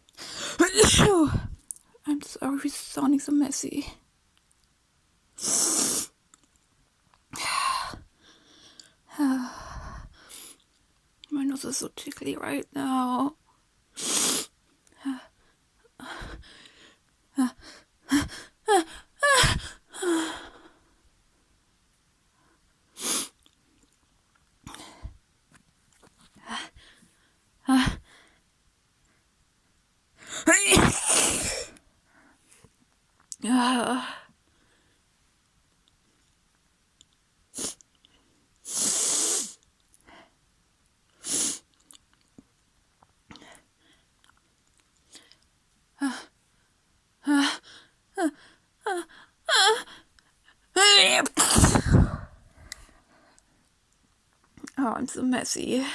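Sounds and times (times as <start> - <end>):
person gasping before a sneeze: 0.3 - 1.6, 30.3 - 31.8, 51.0 - 52.4.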